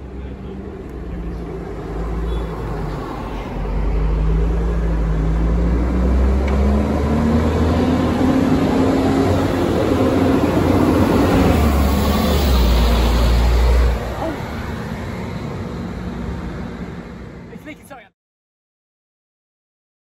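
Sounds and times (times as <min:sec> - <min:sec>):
bus engine accelerating: 0:00.0 - 0:17.6.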